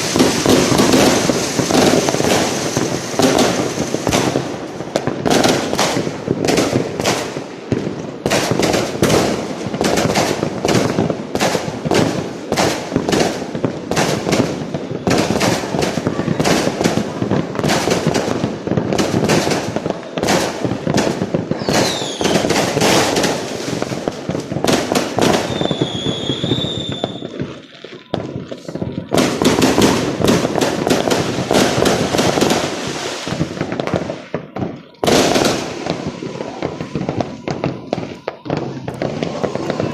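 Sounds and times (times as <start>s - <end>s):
firework whistle: 0.0s - 6.1s, 19.4s - 34.3s
fireworks bangs and crackles: 0.0s - 39.9s.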